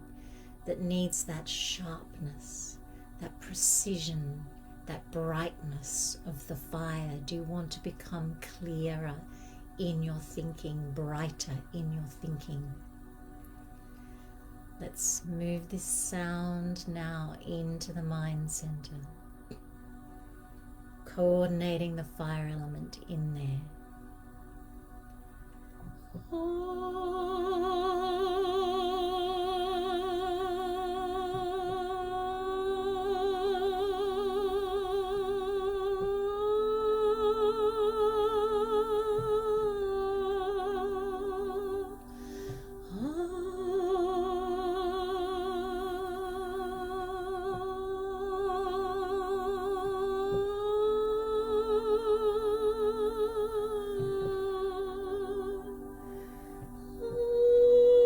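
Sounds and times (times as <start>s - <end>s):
woman singing long held notes: 0.0s - 12.8s, 26.1s - 58.0s
person breathing: 0.1s - 0.6s, 9.3s - 9.8s, 13.6s - 14.5s, 42.1s - 42.8s, 56.0s - 56.8s.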